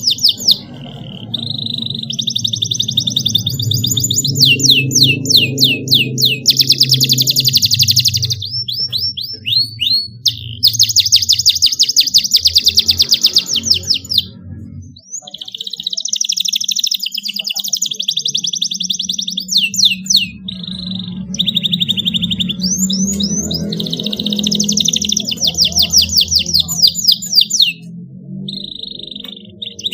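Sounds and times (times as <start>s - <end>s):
canary singing trills: 0.0s - 29.9s.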